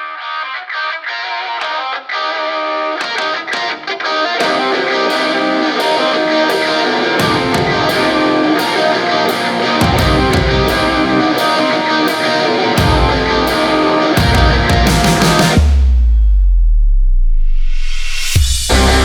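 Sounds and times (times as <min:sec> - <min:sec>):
distorted electric guitar: 0:00.0 - 0:15.8, 0:18.7 - 0:19.0
heavy bass and drums: 0:09.8 - 0:11.4, 0:12.8 - 0:16.9, 0:18.0 - 0:19.0.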